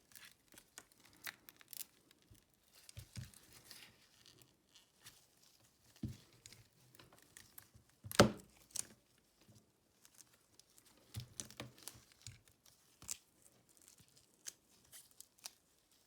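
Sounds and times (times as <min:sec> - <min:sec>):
crinkling and tearing: 0:00.0 - 0:05.5, 0:10.0 - 0:16.0.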